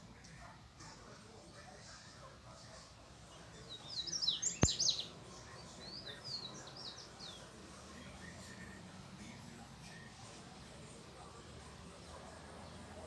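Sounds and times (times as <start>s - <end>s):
small birds chirping: 0.0s - 13.0s
sharp click: 4.6s - 4.8s.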